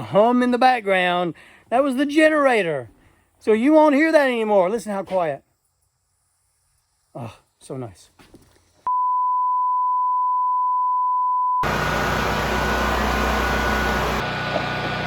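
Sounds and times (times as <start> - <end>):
loud steady beep tone: 8.9 - 11.7
machine running with low hum: 11.6 - 15.0.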